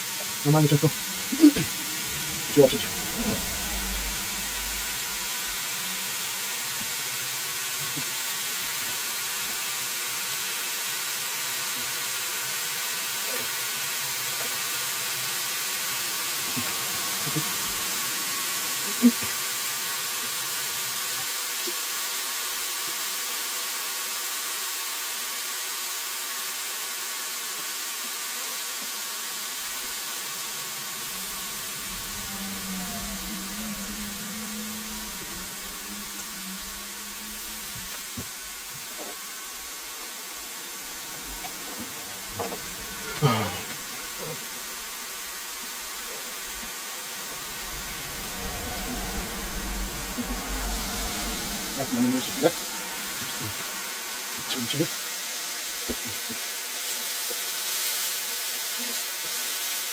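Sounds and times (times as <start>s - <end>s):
chicken frying in hot oil: 5.2s - 31.9s, 53.4s - 59.9s.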